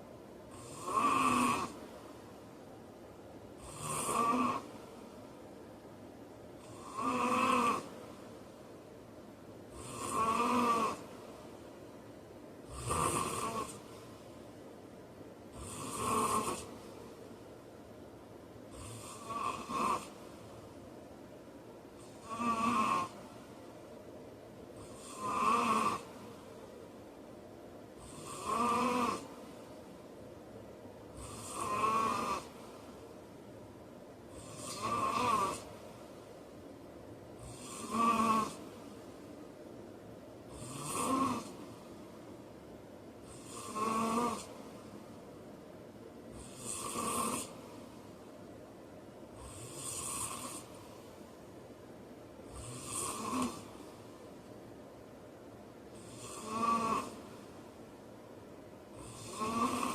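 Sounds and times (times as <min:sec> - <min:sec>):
man snoring: 0:00.5 - 0:01.8, 0:03.6 - 0:04.7, 0:06.6 - 0:08.0, 0:09.7 - 0:11.1, 0:12.7 - 0:13.9, 0:15.5 - 0:16.8, 0:18.7 - 0:20.2, 0:22.0 - 0:23.2, 0:24.8 - 0:26.2, 0:28.0 - 0:29.3, 0:31.1 - 0:32.6, 0:34.3 - 0:35.7, 0:37.4 - 0:38.6, 0:40.5 - 0:41.6, 0:43.2 - 0:44.6, 0:46.3 - 0:47.6, 0:49.4 - 0:50.7, 0:52.4 - 0:53.8, 0:55.9 - 0:57.2, 0:58.9 - 0:59.9.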